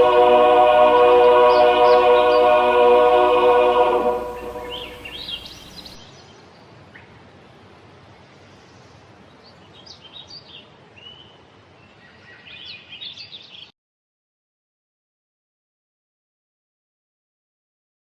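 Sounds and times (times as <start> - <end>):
birds chirping: 0.0 - 6.3
outdoor ambience hiss: 0.0 - 13.7.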